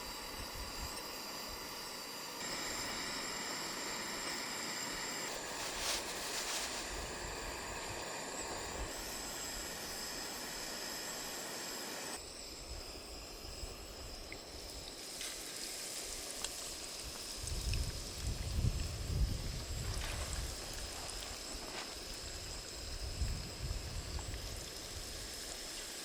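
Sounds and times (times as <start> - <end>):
chicken frying in hot oil: 14.0 - 26.0.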